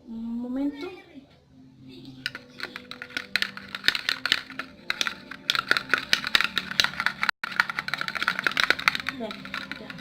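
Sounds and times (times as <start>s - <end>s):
utensil stirring glue in container: 2.2s - 10.0s.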